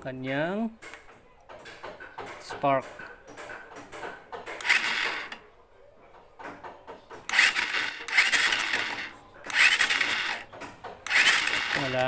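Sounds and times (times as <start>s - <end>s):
motorcycle engine cranking: 4.5s - 5.4s, 7.3s - 12.0s.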